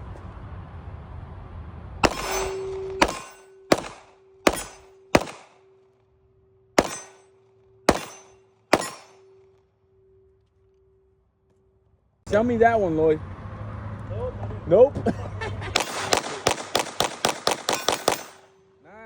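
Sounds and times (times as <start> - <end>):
gunshots with echo: 2.0 - 5.7, 6.8 - 7.2, 7.9 - 9.3, 15.8 - 18.6.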